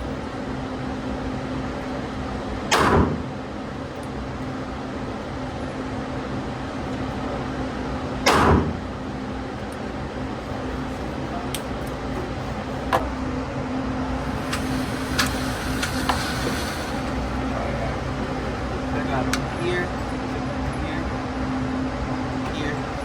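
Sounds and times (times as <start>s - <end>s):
steady low hum: 0.0s - 23.0s
loud gunshot with echo: 2.7s - 3.2s, 8.3s - 8.8s.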